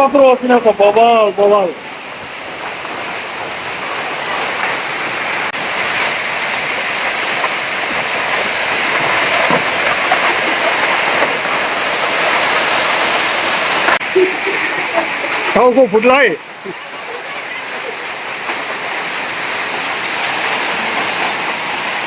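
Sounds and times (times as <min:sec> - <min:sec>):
hail and rain pelting down: 0:00.0 - 0:22.0
hailstone ticks: 0:05.8 - 0:22.0.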